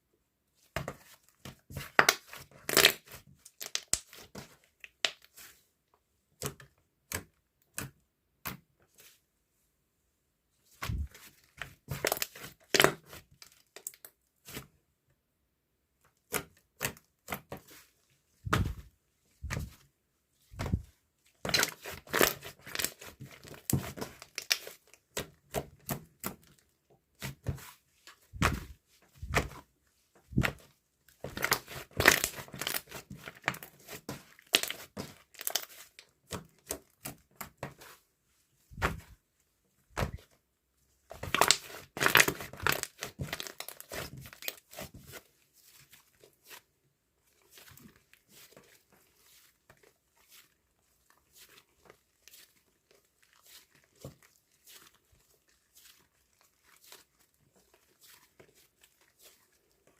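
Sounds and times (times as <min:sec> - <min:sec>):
crinkling handling noises: 0:41.2 - 0:59.9.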